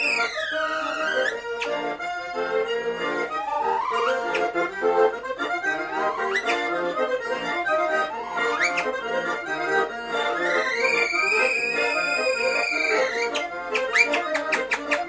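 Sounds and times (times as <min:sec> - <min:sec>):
person whistling: 0:00.0 - 0:01.8, 0:03.3 - 0:04.7, 0:05.9 - 0:06.7, 0:07.9 - 0:09.0, 0:10.4 - 0:15.0
button accordion folk tune: 0:00.0 - 0:15.0.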